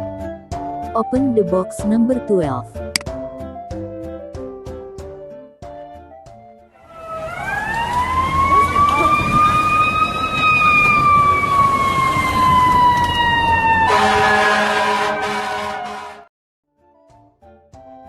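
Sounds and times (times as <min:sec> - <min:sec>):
emergency vehicle siren wailing: 0:06.8 - 0:16.3.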